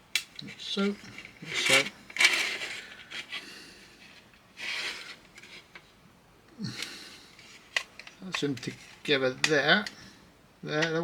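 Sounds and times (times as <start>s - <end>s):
plastic parts rubbing: 0.3s - 5.9s, 7.3s - 9.6s
plastic parts clicking: 7.7s - 10.0s.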